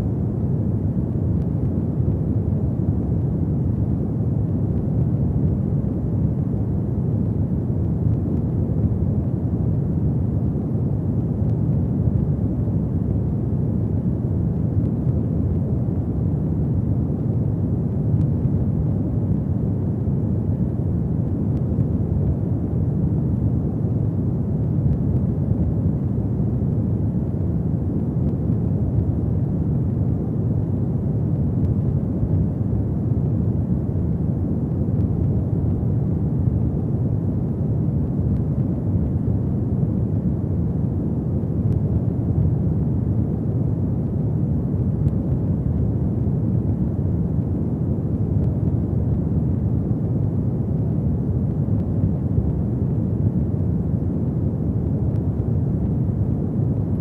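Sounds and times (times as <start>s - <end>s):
fireplace fire burning: 0.0s - 57.0s.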